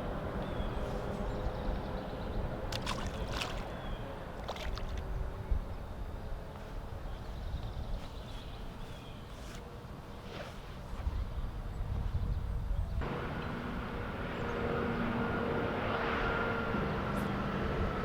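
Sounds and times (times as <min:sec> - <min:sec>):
creek water flowing: 0:02.6 - 0:05.4.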